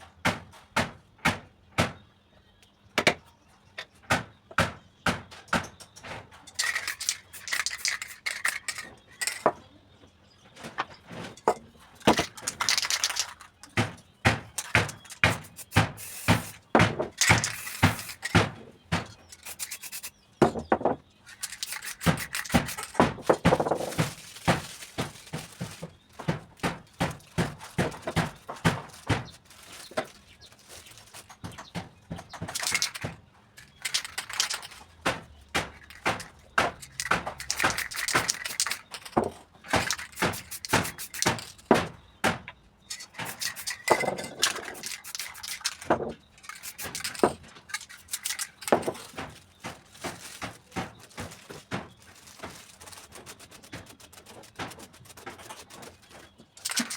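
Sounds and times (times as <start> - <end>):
tools knocking and clicking: 3.0 - 3.2, 3.8 - 9.6, 10.6 - 30.1, 31.2 - 51.8, 53.7 - 56.9
spray can hissing: 14.6 - 18.4, 19.3 - 20.2, 21.3 - 23.0, 36.8 - 38.9, 39.8 - 41.5, 43.3 - 45.8, 46.5 - 47.2.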